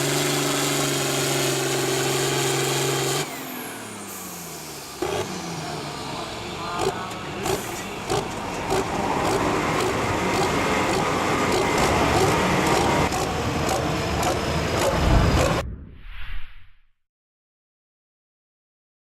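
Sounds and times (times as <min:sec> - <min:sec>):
tractor engine under load: 0:05.0 - 0:15.6.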